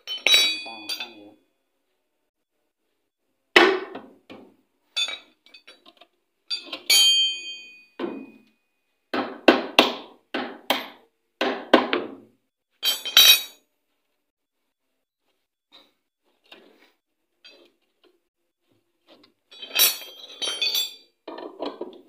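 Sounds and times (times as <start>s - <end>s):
metal tool knocking on metal parts: 5.0s - 8.5s, 12.8s - 13.6s, 19.6s - 22.0s
short metallic ring: 6.5s - 8.4s.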